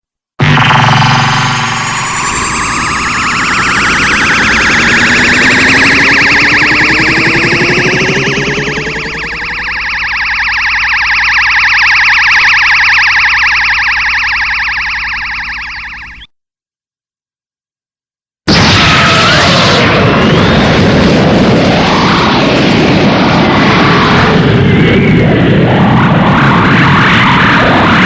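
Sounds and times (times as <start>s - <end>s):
rising electronic energy beam: 0.4s - 16.2s.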